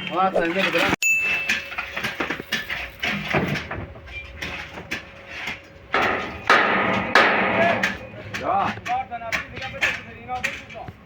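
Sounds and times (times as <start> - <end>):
tools knocking on building materials: 5.9 - 10.8.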